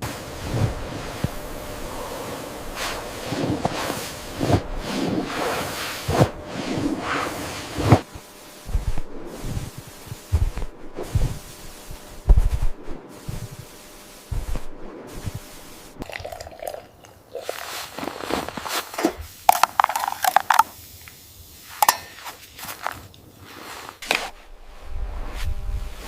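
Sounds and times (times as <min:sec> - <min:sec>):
low thumps: 0:07.8 - 0:16.0
crunching and crackling rustles: 0:17.1 - 0:20.8, 0:22.1 - 0:24.5.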